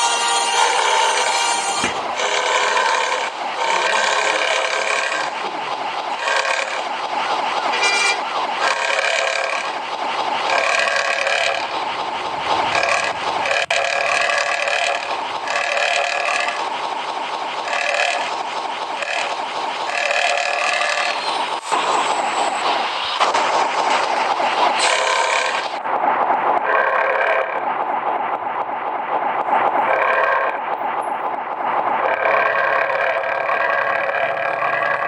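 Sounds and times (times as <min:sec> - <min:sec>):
multi-tone air horn blasts: 0:00.0 - 0:02.4, 0:07.7 - 0:08.2.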